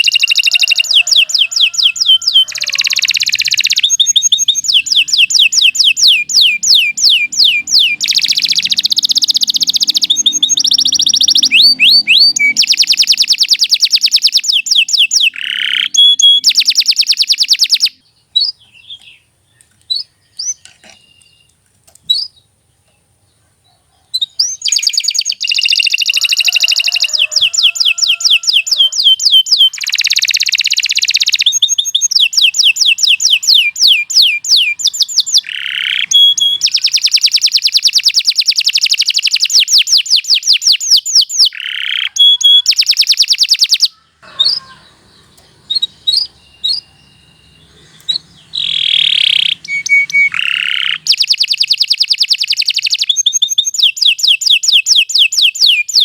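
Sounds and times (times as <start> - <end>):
bird chirps: 0.0 - 56.0
canary singing trills: 0.0 - 56.0.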